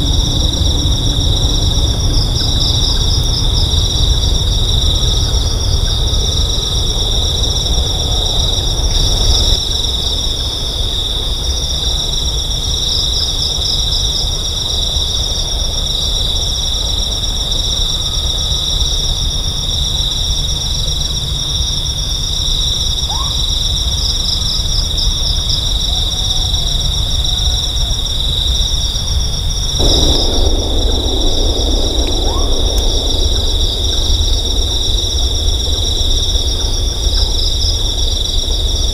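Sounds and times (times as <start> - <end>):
crickets chirring: 0.0 - 38.9
low rumble: 29.8 - 38.8.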